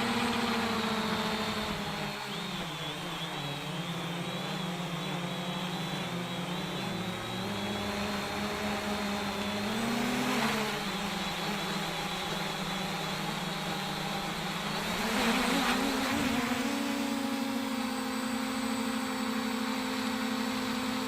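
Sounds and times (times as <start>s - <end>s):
drone motors whining: 0.0s - 21.0s.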